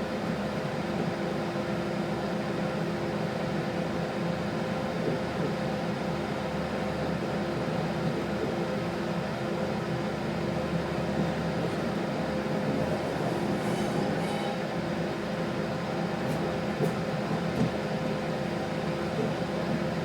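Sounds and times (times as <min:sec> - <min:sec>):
railcar engine hum: 0:00.0 - 0:20.0
wheels rumbling on rails: 0:10.7 - 0:20.0.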